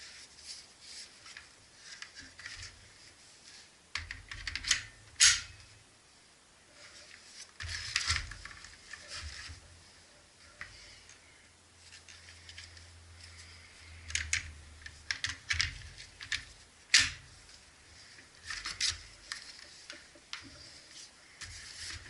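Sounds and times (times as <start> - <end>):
faint rustling: 0.0 - 4.4, 5.5 - 22.0
sharp clicks and clatters: 14.0 - 17.2.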